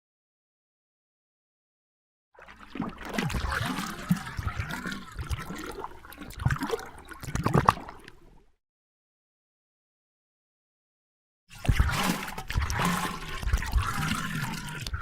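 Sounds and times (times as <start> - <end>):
water splashing and gurgling: 2.4 - 8.6, 11.5 - 15.0.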